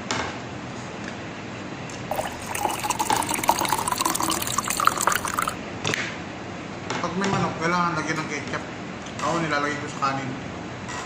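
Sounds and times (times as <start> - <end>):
liquid pouring into a glass: 2.1 - 5.6.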